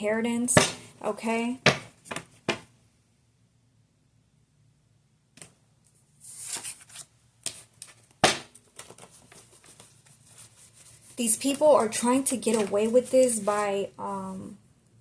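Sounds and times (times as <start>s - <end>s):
cards shuffling: 6.2s - 13.6s.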